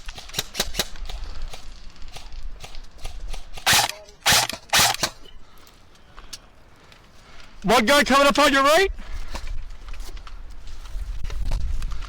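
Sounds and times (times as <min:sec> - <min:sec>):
airsoft gunfire bursts: 0:03.4 - 0:05.2.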